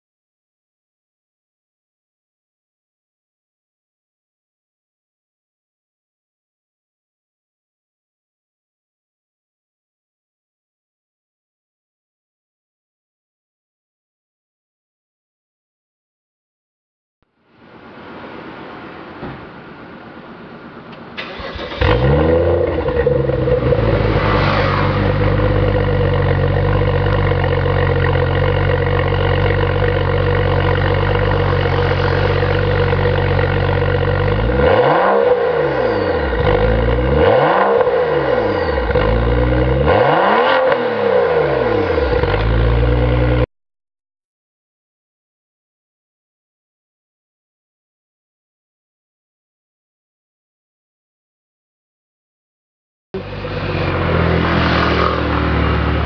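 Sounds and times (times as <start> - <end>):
car engine starting and idling: 20.9 - 43.4, 53.2 - 56.0
engine revving: 21.2 - 43.5, 53.2 - 56.0.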